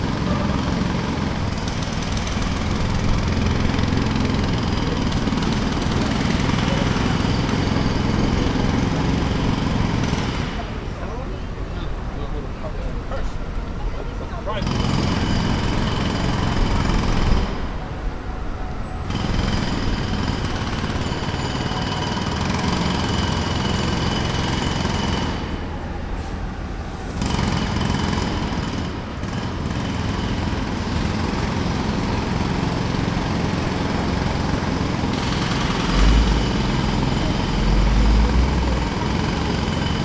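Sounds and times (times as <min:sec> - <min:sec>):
jackhammer breaking pavement: 0:00.0 - 0:11.2, 0:14.6 - 0:17.8, 0:19.1 - 0:25.8, 0:27.2 - 0:40.0
low engine drone: 0:34.0 - 0:39.4.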